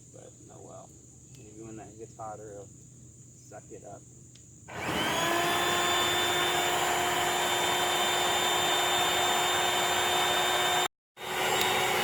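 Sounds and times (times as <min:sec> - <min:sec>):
air pump motor whine: 0:04.7 - 0:12.0.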